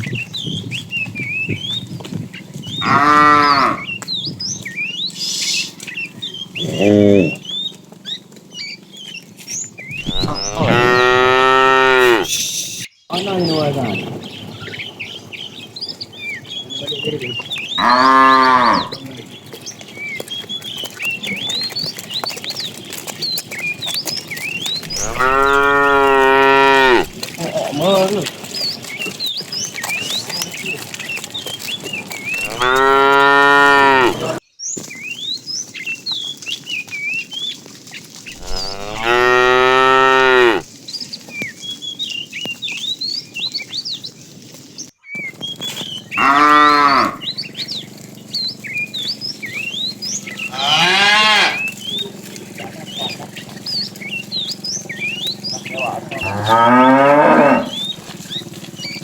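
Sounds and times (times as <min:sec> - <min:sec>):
cows mooing: 0:02.7 - 0:04.0, 0:06.6 - 0:07.6, 0:10.0 - 0:12.3, 0:16.5 - 0:19.9, 0:24.4 - 0:29.2, 0:29.8 - 0:34.4, 0:38.4 - 0:40.7, 0:46.0 - 0:58.9.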